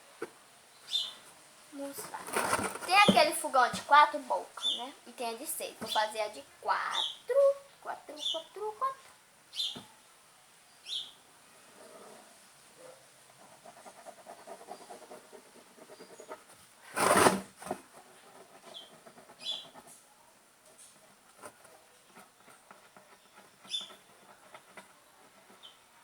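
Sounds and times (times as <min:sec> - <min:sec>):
loud rustle: 0:01.8 - 0:04.0, 0:16.4 - 0:20.0
pen scratching on cardboard: 0:02.0 - 0:04.0, 0:13.4 - 0:20.0, 0:21.4 - 0:25.8.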